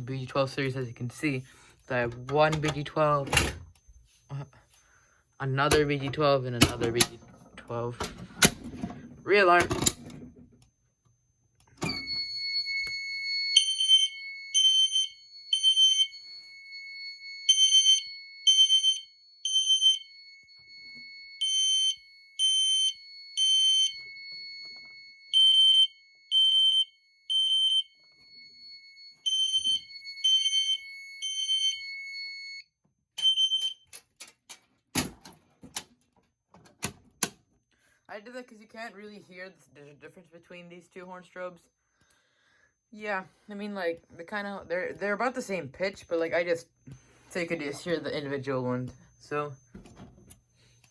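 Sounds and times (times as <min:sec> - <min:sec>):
fire alarm horn blasts: 0:11.8 - 0:33.8.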